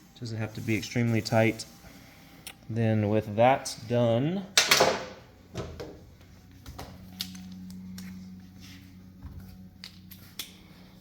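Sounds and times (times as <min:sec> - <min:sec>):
low steady hum: 0:00.0 - 0:11.0
tools clicking and knocking: 0:04.6 - 0:06.0.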